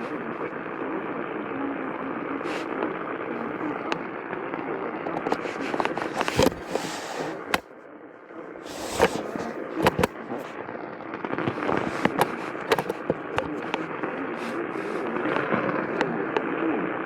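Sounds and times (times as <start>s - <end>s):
crackles and pops: 0.0s - 17.0s
radio static hiss: 0.0s - 17.0s.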